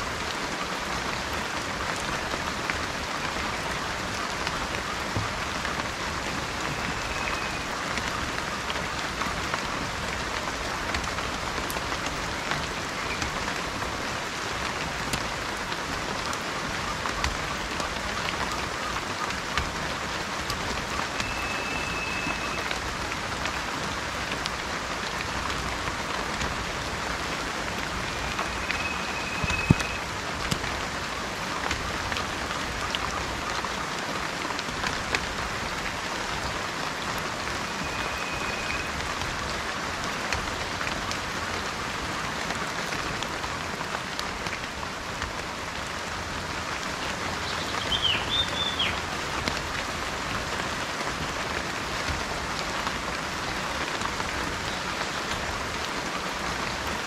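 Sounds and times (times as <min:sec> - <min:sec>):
rain falling: 0:00.0 - 0:57.0
bird whistling high note: 0:06.7 - 0:07.7, 0:21.2 - 0:22.7, 0:28.1 - 0:30.0, 0:37.6 - 0:38.9, 0:47.9 - 0:49.0
bird chirping: 0:47.4 - 0:49.0.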